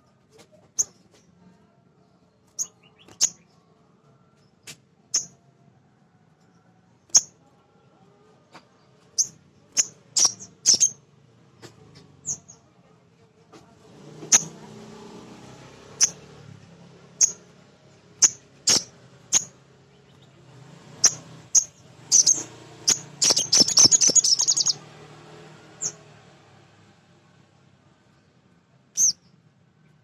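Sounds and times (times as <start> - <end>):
bird calling sharp high notes: 21.1 - 24.8.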